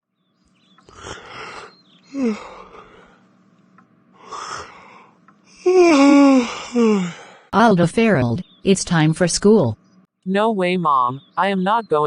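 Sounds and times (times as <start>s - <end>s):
person snoring: 0.9s - 3.2s, 4.2s - 7.5s.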